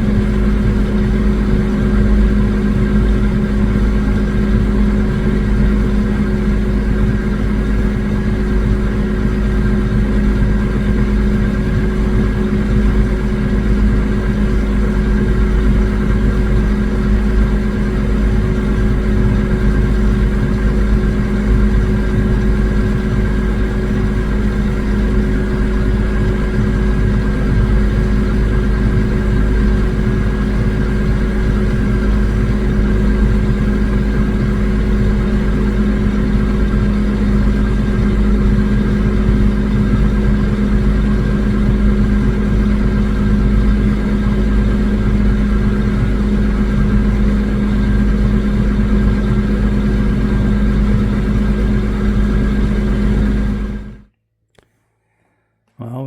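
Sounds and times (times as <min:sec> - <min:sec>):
thin steady whine: 0:00.0 - 0:54.0
farm machinery engine drone: 0:00.0 - 0:54.1.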